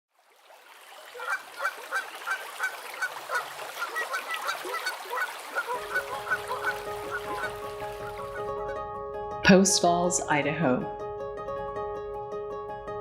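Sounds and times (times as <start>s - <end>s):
geese honking: 1.1s - 8.8s
music: 5.7s - 13.0s.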